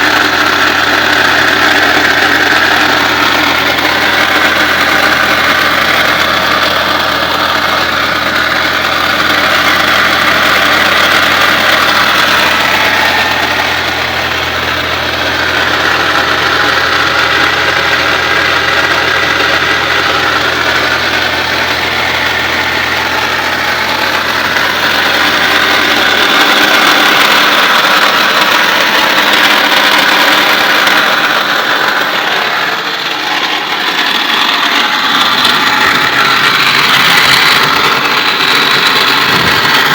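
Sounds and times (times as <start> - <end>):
car engine idling: 0.0 - 39.9
mechanical noise from compressor: 35.3 - 39.9.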